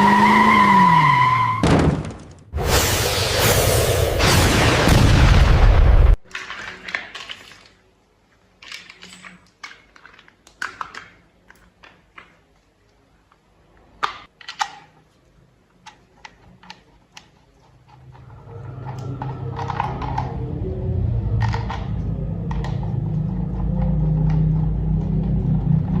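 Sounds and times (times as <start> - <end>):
plastic toy parts clicking: 8.6 - 12.5, 14.0 - 15.1, 15.7 - 18.2
steady low hum: 18.0 - 26.0.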